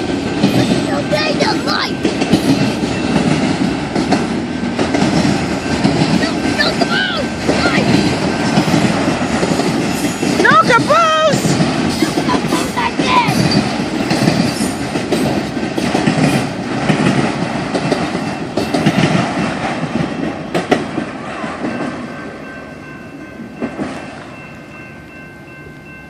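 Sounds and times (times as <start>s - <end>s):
train wheels clacking on rails: 0.0s - 26.0s.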